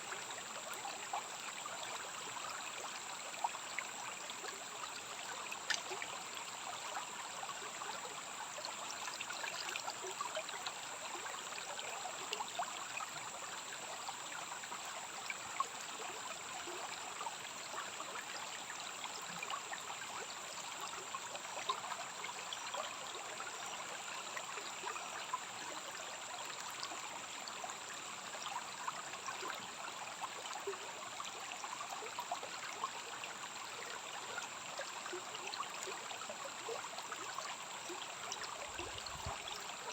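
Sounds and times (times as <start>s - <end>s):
stream running and trickling: 0.0s - 39.9s.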